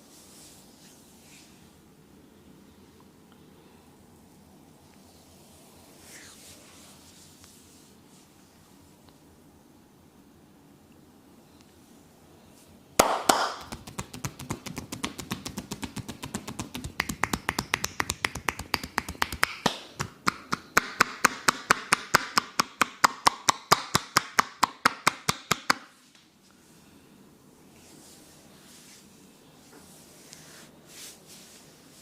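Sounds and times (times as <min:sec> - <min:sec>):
hands tapping body in massage: 0:13.0 - 0:25.9.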